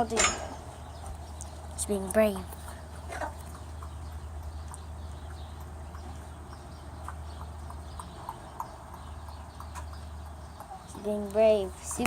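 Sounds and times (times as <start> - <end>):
chickens clucking softly: 2.4 - 11.1.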